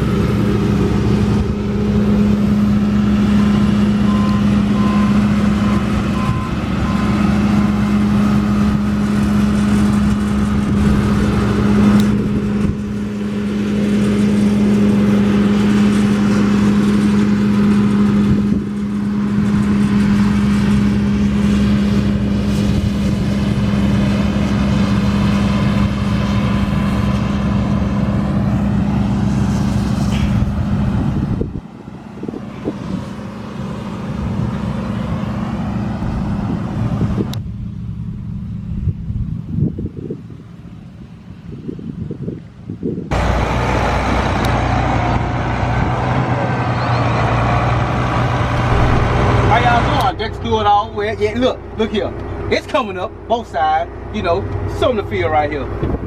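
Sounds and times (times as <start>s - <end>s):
combine harvester running: 0.0s - 56.0s
short beeps: 4.1s - 7.2s.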